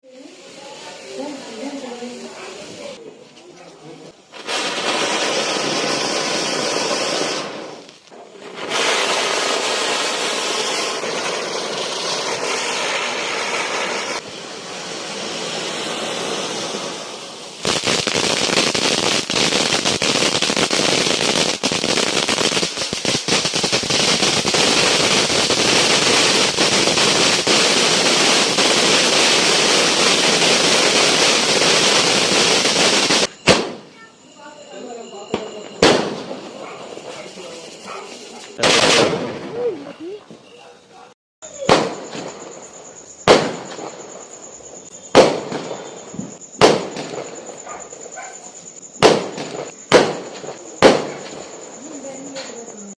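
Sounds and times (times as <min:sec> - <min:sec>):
fireworks hissing: 0:00.0 - 0:40.6, 0:41.4 - 0:52.9
rapid firecracker bangs: 0:04.3 - 0:34.0, 0:35.3 - 0:39.8, 0:41.5 - 0:48.2, 0:48.8 - 0:51.7.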